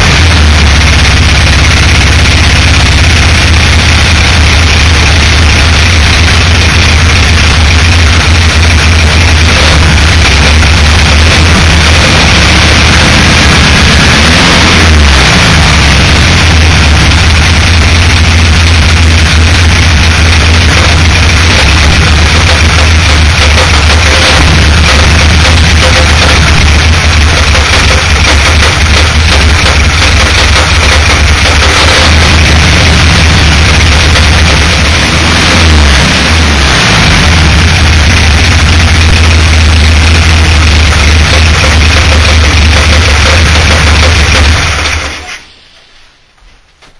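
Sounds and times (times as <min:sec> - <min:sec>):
engine knocking: 0:00.0 - 0:45.3
engine running loudly: 0:00.0 - 0:45.7.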